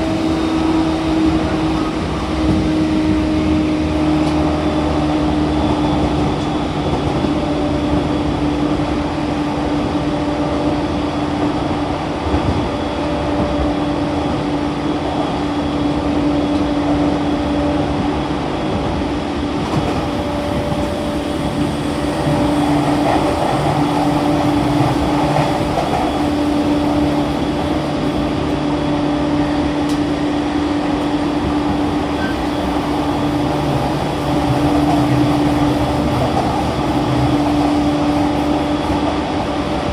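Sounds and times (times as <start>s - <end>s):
train wheel-and-rail noise: 0.0s - 39.9s.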